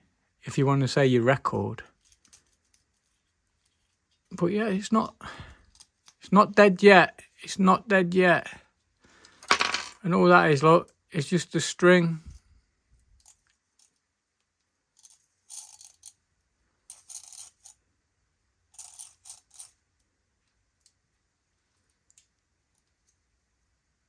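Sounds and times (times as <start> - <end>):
small parts clicking and scraping: 1.9 - 4.4, 5.5 - 6.2, 13.0 - 17.8, 18.7 - 21.1, 21.7 - 23.3.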